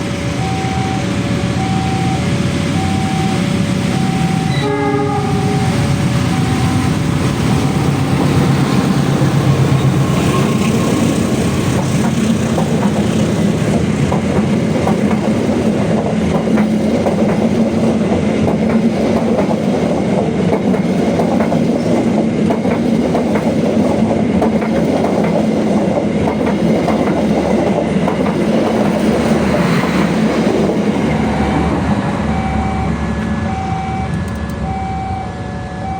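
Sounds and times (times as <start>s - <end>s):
short electronic tones: 0.4s - 3.4s, 4.0s - 7.0s, 32.3s - 35.9s
train wheels clattering over rails: 5.3s - 32.1s.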